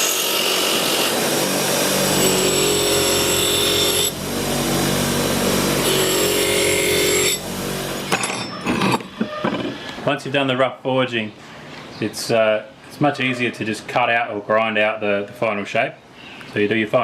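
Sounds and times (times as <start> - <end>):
motor hum: 0.5 - 8.1.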